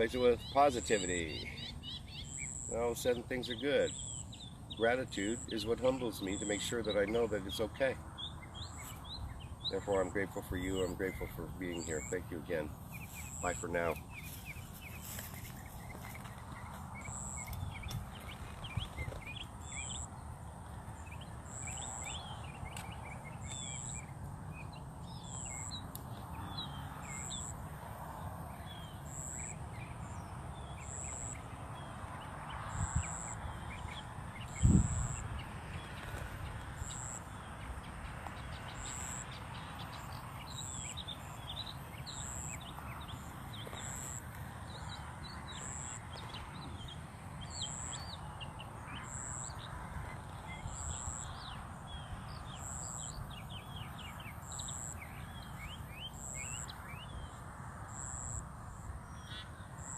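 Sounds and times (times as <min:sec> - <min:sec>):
birds chirping: 0:00.0 - 0:59.9.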